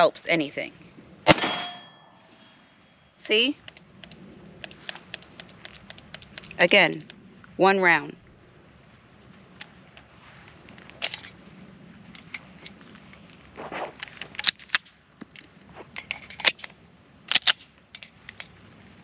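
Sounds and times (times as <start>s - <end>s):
gunfire cracks: 1.3s - 1.9s
pistol handling clicks: 3.6s - 7.2s, 14.0s - 16.7s, 17.3s - 18.5s.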